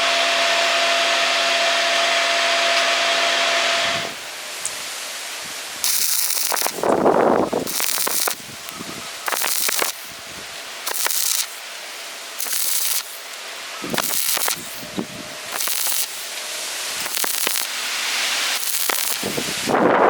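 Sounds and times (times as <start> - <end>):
arc welding crackling hiss: 4.1 - 20.0.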